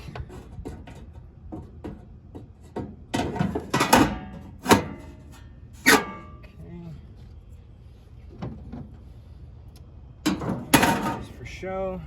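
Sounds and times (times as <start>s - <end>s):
metal grill parts clanking: 0.0s - 6.5s, 10.3s - 11.3s.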